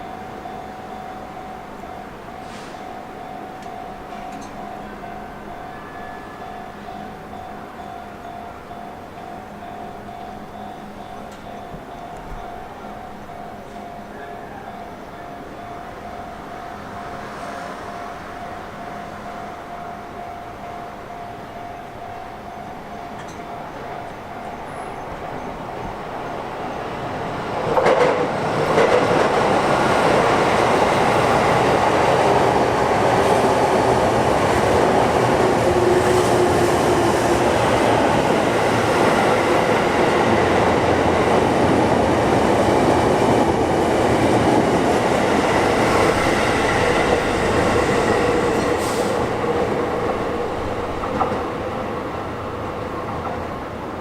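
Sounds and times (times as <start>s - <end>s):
electric train passing: 0.0s - 54.0s.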